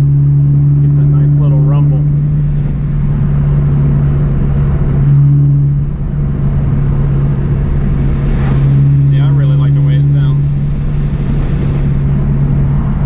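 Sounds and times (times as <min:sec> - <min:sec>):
car exhaust drone from inside: 0:00.0 - 0:13.0.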